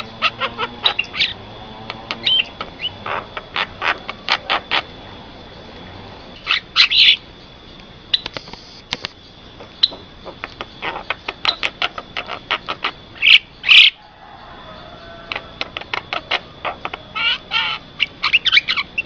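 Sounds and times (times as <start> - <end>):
bird clicking and squawking: 0.0 - 4.9, 8.2 - 13.4, 15.3 - 19.0.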